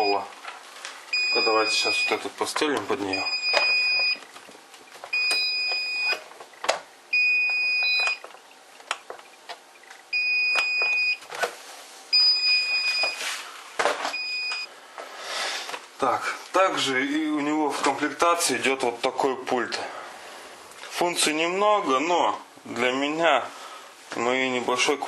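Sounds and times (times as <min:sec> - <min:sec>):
robot vacuum alarm beeping: 0:01.1 - 0:02.2, 0:03.1 - 0:04.2, 0:05.1 - 0:06.2, 0:07.1 - 0:08.2, 0:10.1 - 0:11.2, 0:12.1 - 0:13.2.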